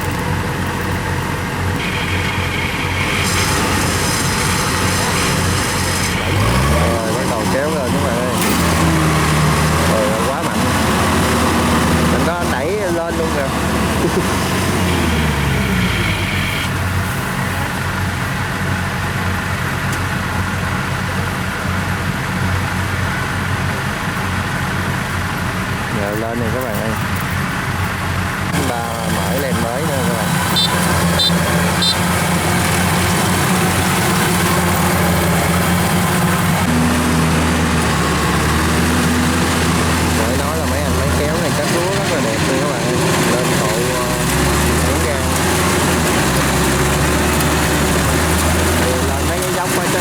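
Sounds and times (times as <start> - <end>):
higher whine: 0.0 - 18.4
diesel engines under load: 0.0 - 50.0.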